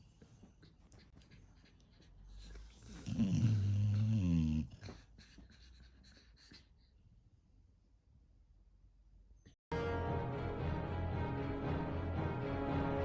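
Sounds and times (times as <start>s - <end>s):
dog low drawn-out vocalization: 0.6s - 6.9s.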